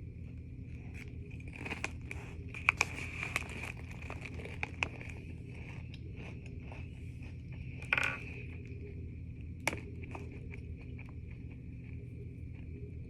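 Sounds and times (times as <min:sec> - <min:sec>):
potato chip crunching: 0:00.7 - 0:08.8.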